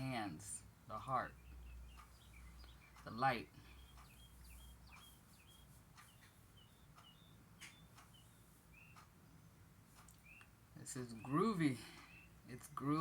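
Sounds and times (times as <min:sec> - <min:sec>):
low steady hum: 0:00.0 - 0:13.0
songbird chirps: 0:00.0 - 0:13.0
faint clicks: 0:09.9 - 0:10.6.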